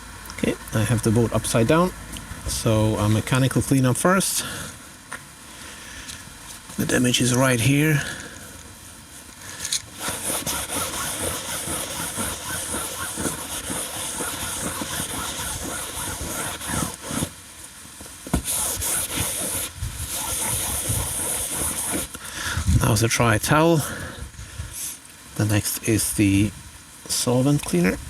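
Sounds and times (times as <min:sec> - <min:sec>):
abrasive pad scrubbing fabric: 0:09.9 - 0:17.4, 0:18.3 - 0:22.2.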